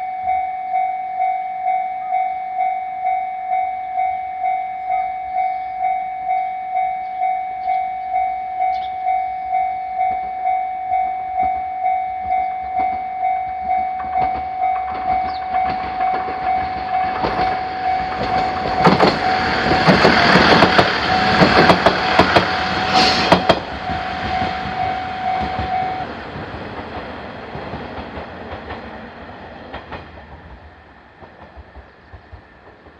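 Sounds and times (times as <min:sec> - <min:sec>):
electronic crossing warning bell: 0:00.0 - 0:26.2
train wheels clattering over rail joints: 0:14.0 - 0:32.9.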